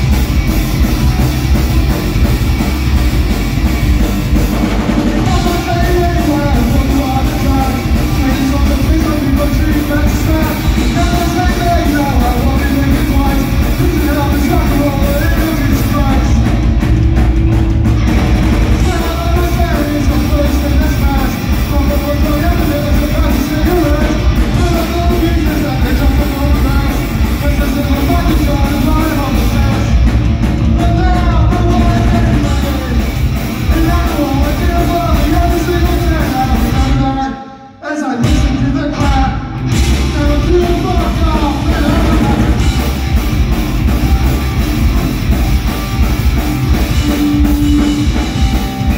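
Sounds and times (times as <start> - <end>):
heavy rock band playing: 0.0 - 48.9
singer shouting: 5.0 - 16.5.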